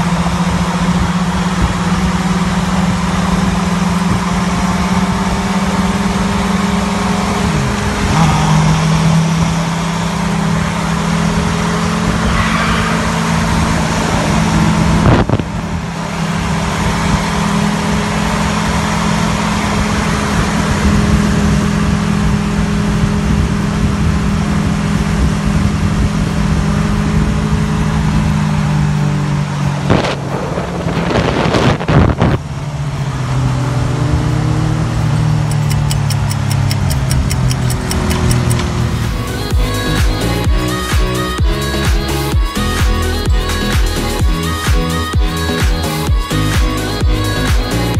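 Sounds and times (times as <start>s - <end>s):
vehicle engine running: 0.0s - 47.9s.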